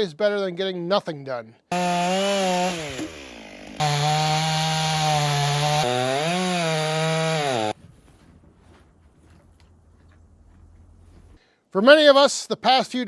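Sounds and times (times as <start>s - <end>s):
chainsaw running at high revs: 1.7s - 7.8s.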